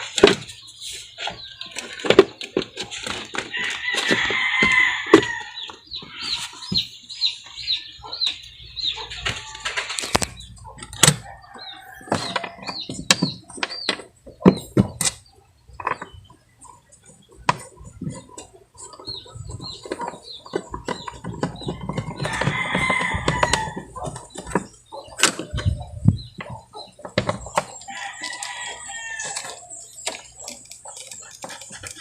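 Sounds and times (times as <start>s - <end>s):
chickens clucking: 0.0s - 32.0s
rooster crowing: 3.6s - 5.6s, 22.2s - 23.9s, 27.9s - 29.6s
sharp clicks and knocks: 17.4s - 28.5s.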